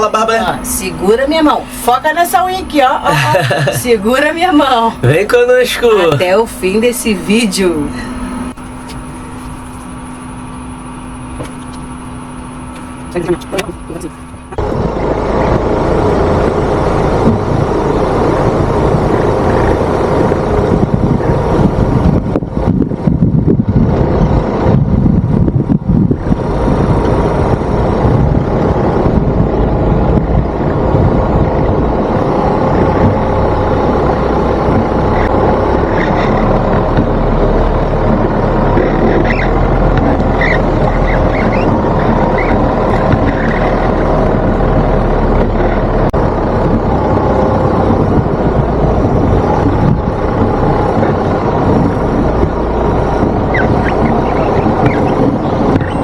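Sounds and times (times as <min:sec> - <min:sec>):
vehicle engine and road noise: 0:00.0 - 0:56.0.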